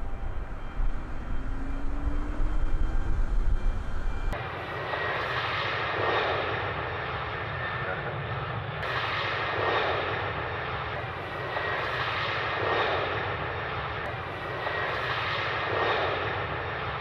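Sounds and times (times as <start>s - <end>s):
airplane engines rushing: 0.0s - 17.0s.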